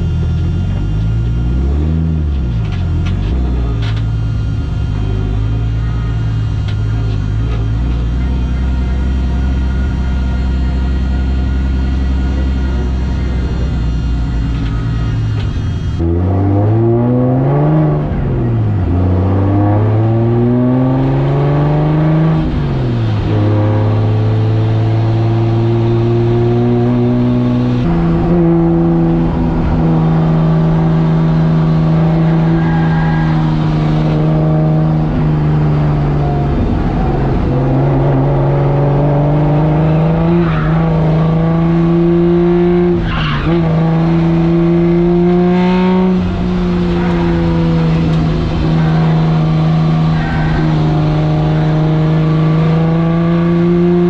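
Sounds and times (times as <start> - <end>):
car engine at high revs: 0.0 - 54.0.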